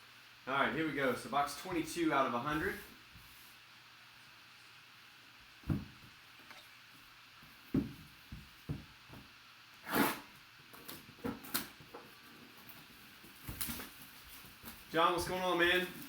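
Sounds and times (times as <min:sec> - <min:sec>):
cardboard box knocks and thumps: 0:05.6 - 0:06.0, 0:07.7 - 0:09.3.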